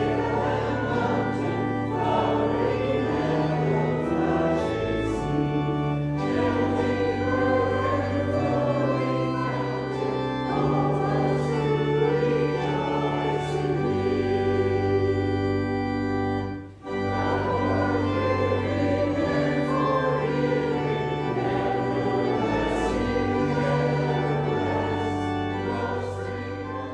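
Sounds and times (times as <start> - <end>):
church organ: 0.0 - 26.9
voices singing a hymn: 0.0 - 26.9.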